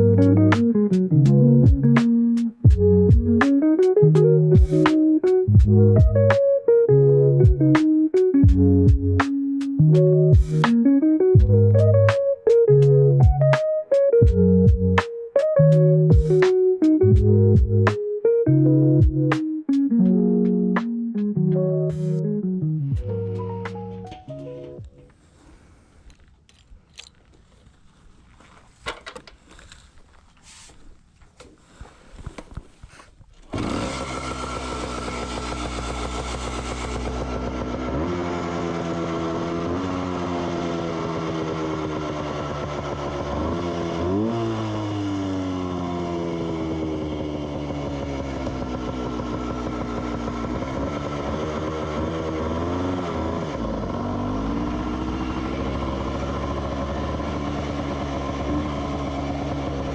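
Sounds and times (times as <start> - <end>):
knocks and clicks: 23.0 - 25.2
motorcycle engine revving: 33.5 - 59.9.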